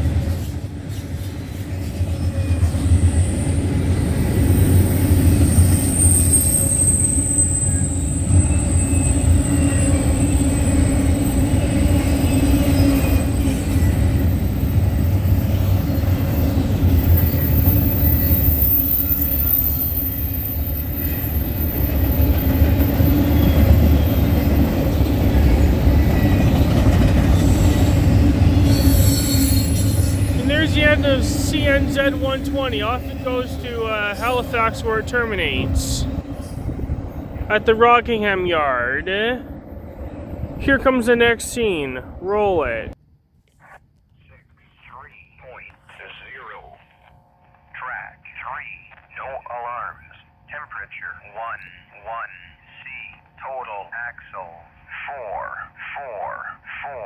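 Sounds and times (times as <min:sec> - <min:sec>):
freight cars rumbling over rails: 0:00.0 - 0:43.0
high wheel squeal: 0:01.8 - 0:31.0, 0:36.0 - 0:37.6.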